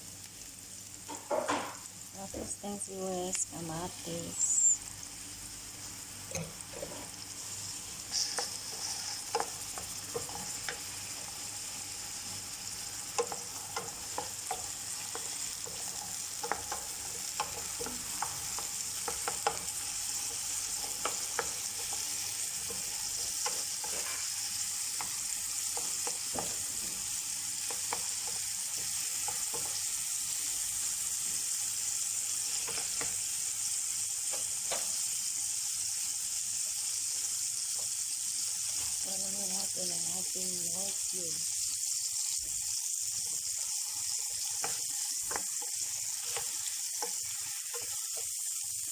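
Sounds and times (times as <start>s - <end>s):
onion and tomato sizzling in oil: 0.0s - 48.9s
utensil scraping a pan: 8.0s - 9.6s.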